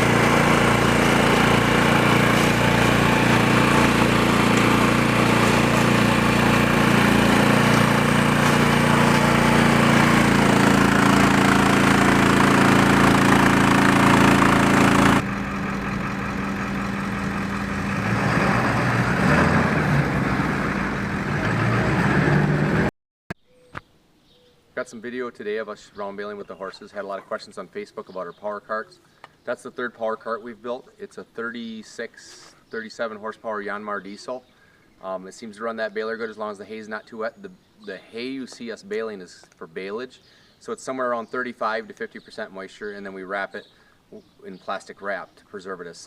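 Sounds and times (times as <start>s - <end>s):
diesel engine running: 0.0s - 22.9s
round baler machinery: 0.0s - 22.9s.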